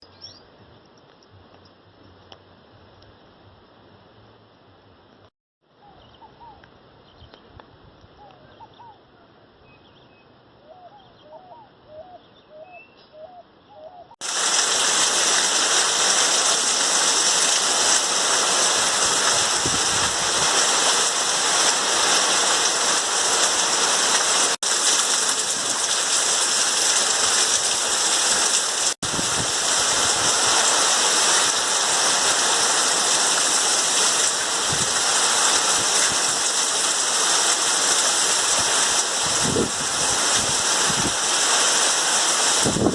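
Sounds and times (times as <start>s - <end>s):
heavy rain pouring: 14.2s - 42.9s
running water: 14.2s - 42.9s.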